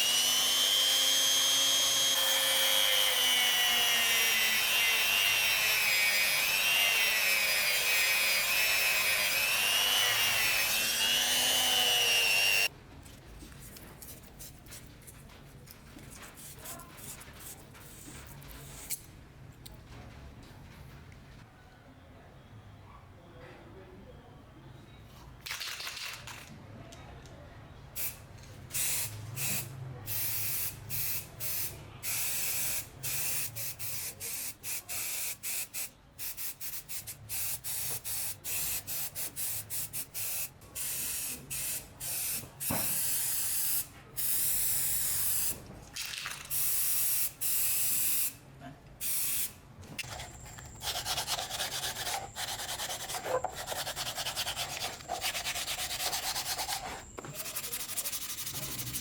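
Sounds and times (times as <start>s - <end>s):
sanding sound: 50.0s - 59.0s.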